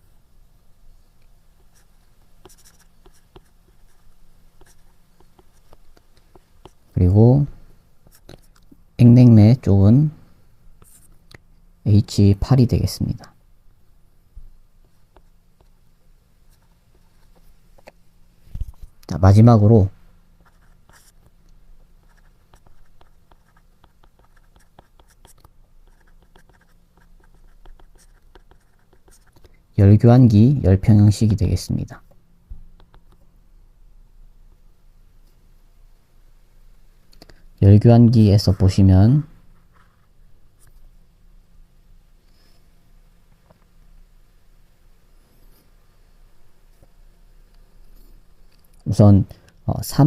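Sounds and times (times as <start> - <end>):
low electrical hum: 0.0 - 50.0
pen tapping and scratching: 1.7 - 4.0, 4.6 - 6.8, 22.0 - 29.5, 32.8 - 33.2.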